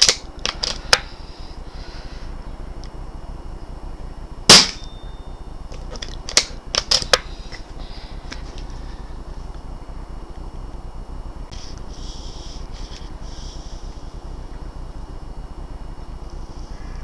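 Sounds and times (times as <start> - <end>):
air rifle shot: 4.5 - 5.0
rifle action metallic clicks: 5.8 - 7.3.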